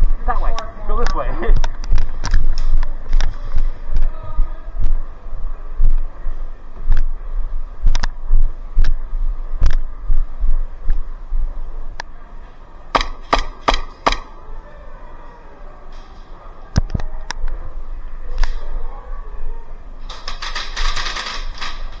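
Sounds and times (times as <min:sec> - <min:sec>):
airsoft gun shots: 0:13.0 - 0:14.6.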